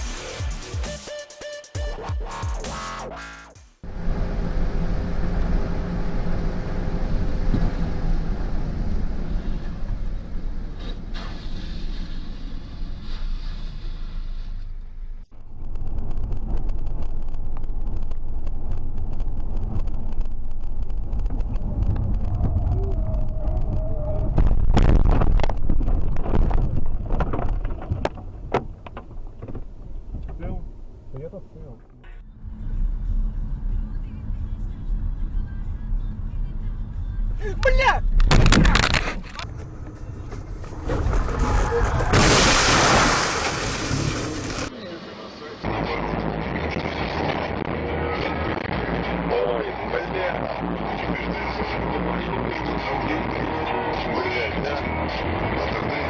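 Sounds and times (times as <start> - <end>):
electronic music: 0.0 - 3.7
road noise: 3.3 - 56.0
vehicle engine rumble: 3.8 - 56.0
tyre squeal: 22.2 - 24.5.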